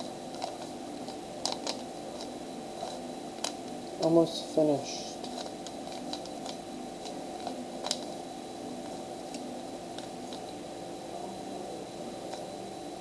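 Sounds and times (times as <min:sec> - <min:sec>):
background hum: 0:00.0 - 0:13.0
puzzle cube clicking: 0:00.3 - 0:03.6.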